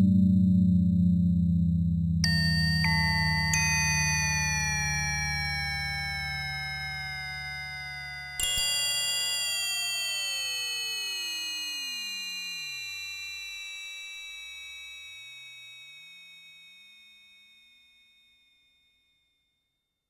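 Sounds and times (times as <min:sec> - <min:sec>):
low synth tones sweeping: 0:00.0 - 0:08.5
synthesizer tones sinking in pitch: 0:00.0 - 0:08.8.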